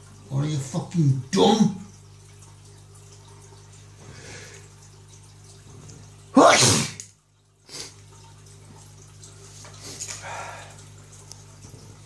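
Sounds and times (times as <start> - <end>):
man sneezing: 6.4 - 7.0.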